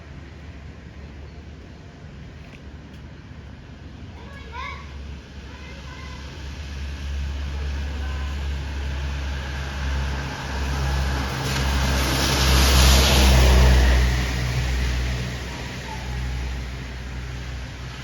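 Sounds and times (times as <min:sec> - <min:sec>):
heavy vehicle driving past: 0:05.8 - 0:18.0.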